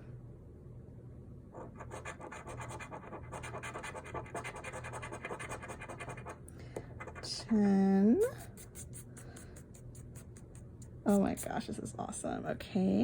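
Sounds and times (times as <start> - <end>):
scratching lottery ticket: 1.6 - 6.4, 8.4 - 11.6.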